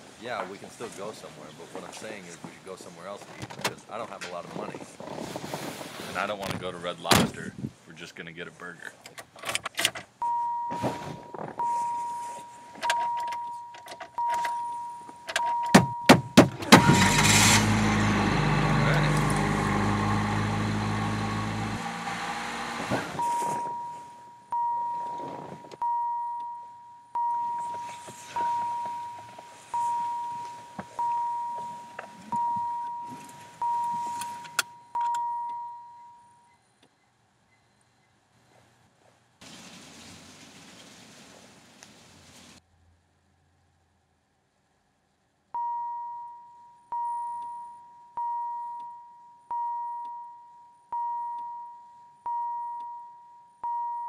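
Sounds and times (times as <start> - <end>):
seatbelt warning chime: 10.2 - 17.4, 23.2 - 36.8, 45.6 - 54.0.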